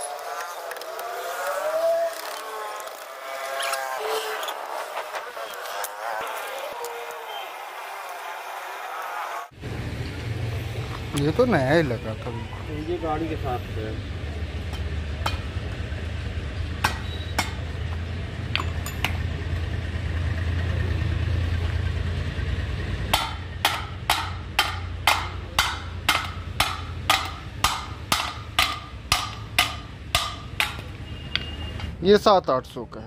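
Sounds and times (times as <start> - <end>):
hammer striking metal: 16.8 - 17.7, 18.5 - 19.3, 23.1 - 31.5.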